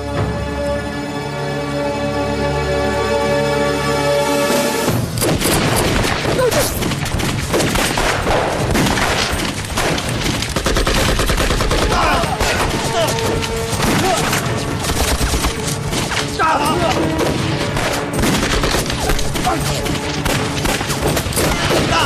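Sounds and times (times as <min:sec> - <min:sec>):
rifles and machine guns firing: 0:05.1 - 0:16.3, 0:16.9 - 0:22.0
faint shouting: 0:11.9 - 0:13.2.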